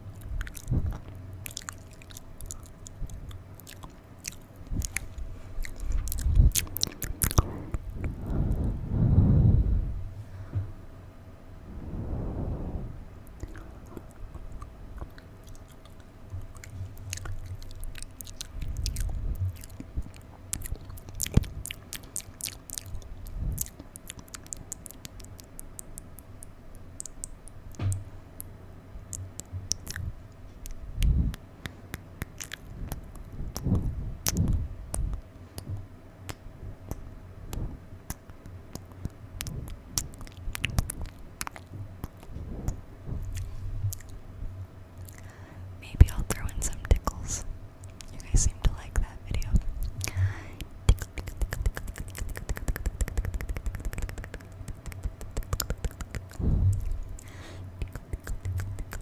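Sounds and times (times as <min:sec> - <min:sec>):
lip smacks: 0:00.0 - 0:08.7, 0:13.2 - 0:44.3, 0:45.0 - 0:59.0
wet tongue clicks: 0:00.1 - 0:08.6, 0:13.4 - 0:44.2, 0:45.0 - 0:59.0
slurping pops: 0:50.9 - 0:59.0.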